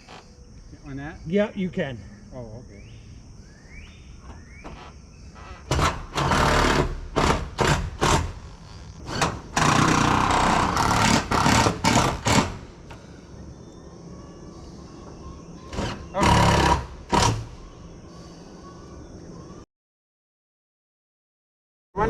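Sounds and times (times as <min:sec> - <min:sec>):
power driver driving screws: 0:05.7 - 0:12.6.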